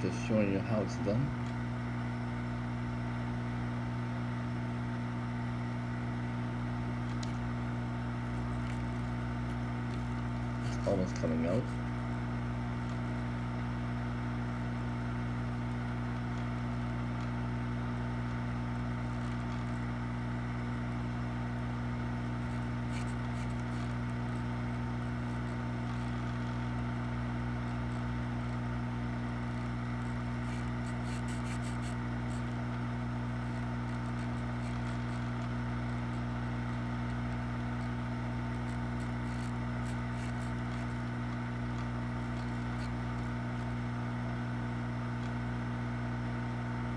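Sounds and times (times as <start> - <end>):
hot air blower humming: 0.0 - 2.0, 9.7 - 11.7.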